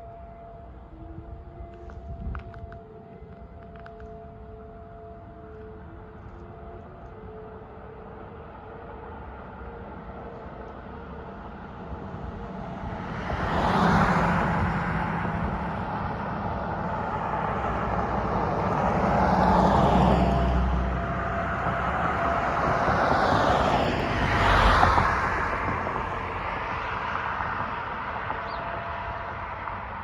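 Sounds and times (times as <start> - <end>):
cars passing: 8.1 - 30.0.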